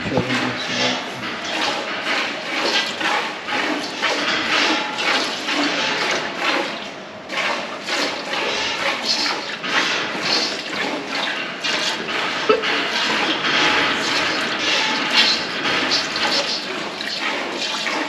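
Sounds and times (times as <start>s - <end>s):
milk squirting into a bucket: 15.1s - 18.0s.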